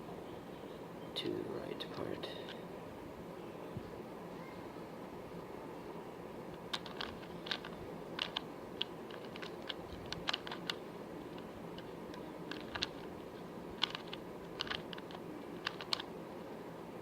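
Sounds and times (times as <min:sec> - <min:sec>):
plastic puzzle cube clicking: 0:06.6 - 0:16.1.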